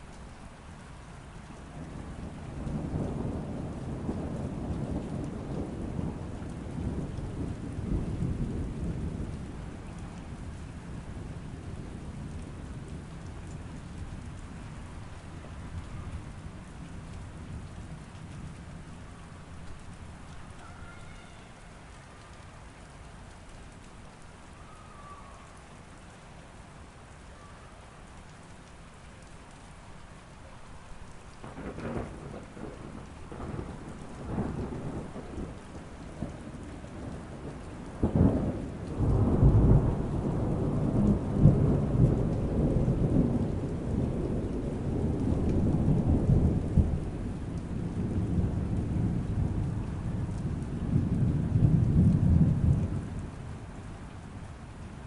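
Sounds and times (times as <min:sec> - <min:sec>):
steady rain: 0:00.0 - 0:55.0
thunder rumbling and clapping: 0:01.7 - 0:19.0, 0:31.4 - 0:54.2.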